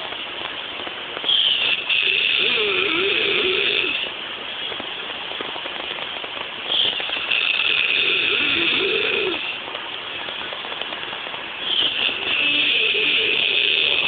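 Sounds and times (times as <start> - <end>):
person snoring loudly: 1.9 - 4.0, 7.3 - 9.4, 12.1 - 14.0.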